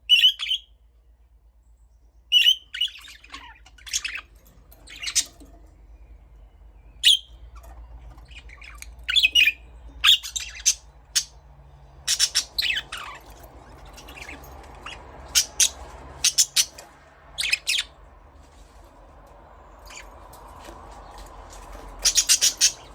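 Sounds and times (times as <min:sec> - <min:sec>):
budgerigar chirps and squawks: 0:00.1 - 0:00.7, 0:02.3 - 0:04.3, 0:08.3 - 0:11.4, 0:12.0 - 0:13.3, 0:14.1 - 0:16.8, 0:22.0 - 0:22.9.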